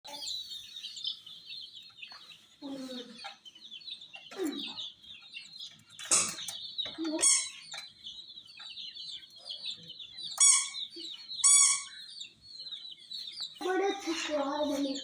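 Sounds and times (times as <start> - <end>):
baby chicks peeping: 0.1 - 15.0
louder lower chick calls: 6.0 - 9.2, 9.9 - 12.9.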